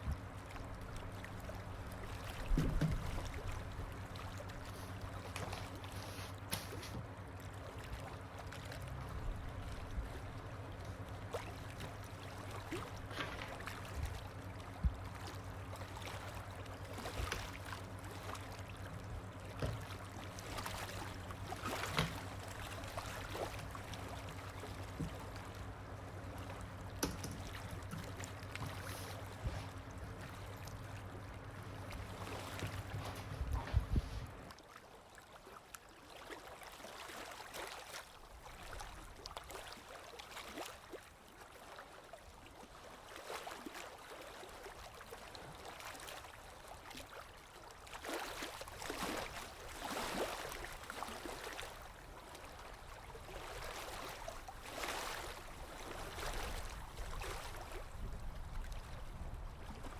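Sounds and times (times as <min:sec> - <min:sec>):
low steady hum: 0:00.0 - 0:34.6
steady wash of water: 0:00.0 - 0:59.9
water drips and splashes: 0:00.1 - 0:33.3, 0:34.4 - 0:59.0.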